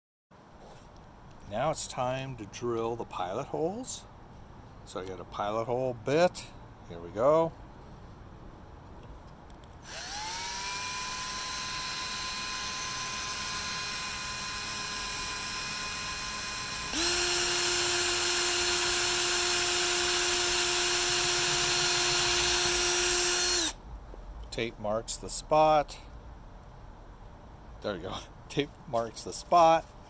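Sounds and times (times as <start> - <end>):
electric drill whining: 9.8 - 23.8.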